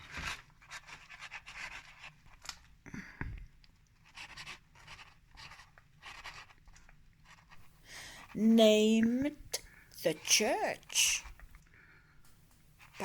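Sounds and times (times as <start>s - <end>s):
pen scratching on paper: 0.0s - 2.4s, 4.0s - 9.4s, 10.0s - 11.5s, 12.8s - 13.0s.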